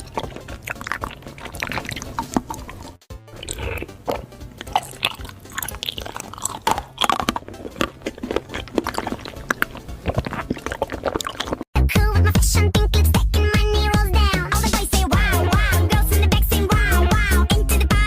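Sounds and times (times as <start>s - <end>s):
crunchy chewing: 0.0s - 11.7s.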